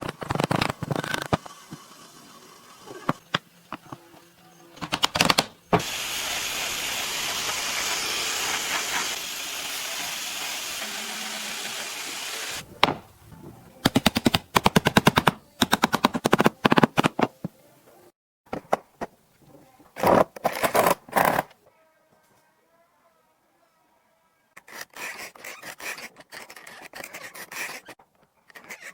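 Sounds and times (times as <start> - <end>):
hissing power tool: 5.8 - 12.6.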